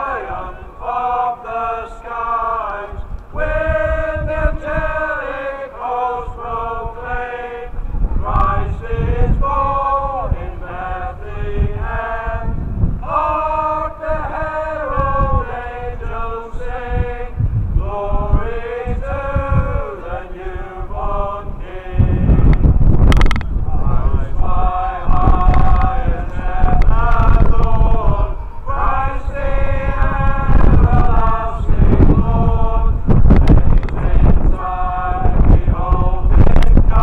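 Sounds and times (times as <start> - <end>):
wind rumbling on microphone: 0.0 - 37.0.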